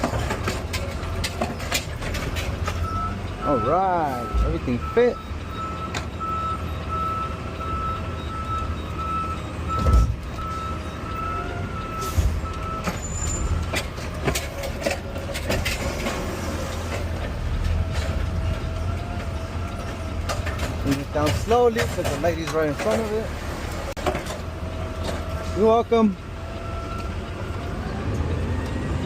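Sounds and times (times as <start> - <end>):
metal clunks and bangs: 0.0 - 3.1, 9.7 - 10.6, 12.0 - 25.6
diesel engine and hydraulics running: 0.0 - 29.0
warning beeps: 2.8 - 13.6.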